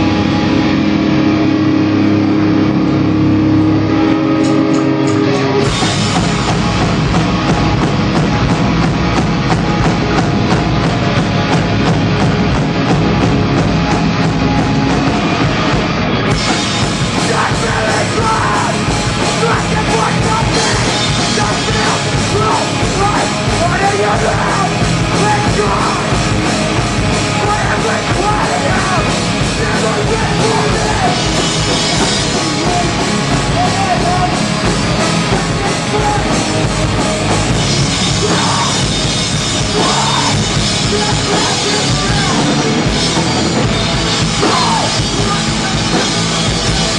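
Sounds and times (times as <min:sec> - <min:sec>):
distorted guitars and bass: 0:00.0 - 0:46.9
drums: 0:00.0 - 0:46.9
yelled vocals: 0:09.9 - 0:46.9.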